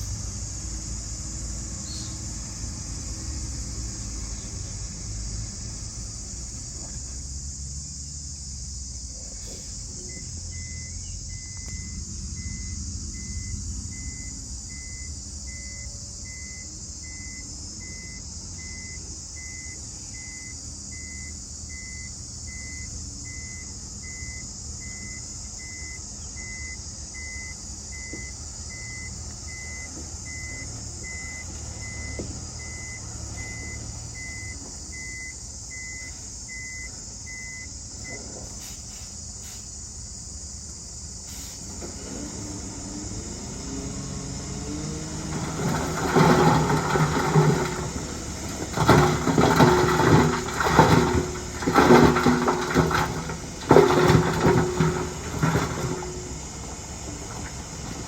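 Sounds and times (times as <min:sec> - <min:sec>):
heavy machinery diesel engine: 0:00.0 - 0:40.0, 0:40.9 - 0:58.0
reversing alarm beeping: 0:09.9 - 0:39.6, 0:43.0 - 0:58.0.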